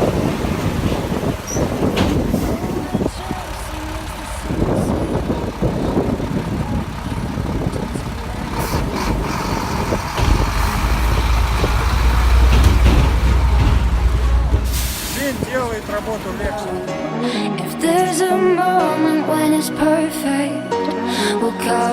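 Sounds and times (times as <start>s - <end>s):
heavy truck engine running: 0.0s - 16.9s.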